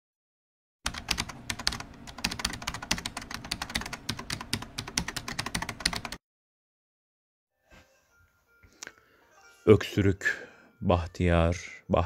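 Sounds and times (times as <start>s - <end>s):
rapid keyboard typing: 0.9s - 6.2s.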